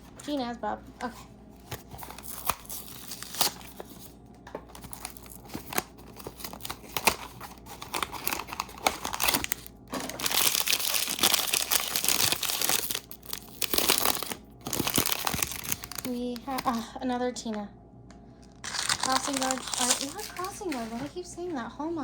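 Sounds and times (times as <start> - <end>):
wrapper crinkling: 1.6 - 16.8, 18.6 - 21.2
bag tearing open: 2.0 - 4.1, 4.7 - 16.7, 18.6 - 21.1.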